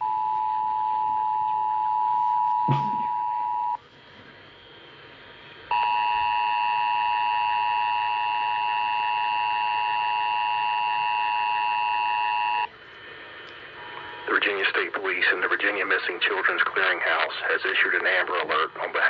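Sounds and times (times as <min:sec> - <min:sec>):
two-tone attention signal: 0:00.0 - 0:03.8.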